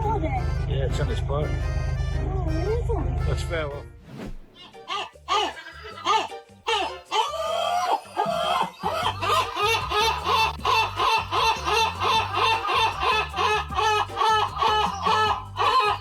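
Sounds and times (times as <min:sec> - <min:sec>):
steady bass line: 0:00.0 - 0:03.8
chicken clucks in music: 0:04.6 - 0:16.0.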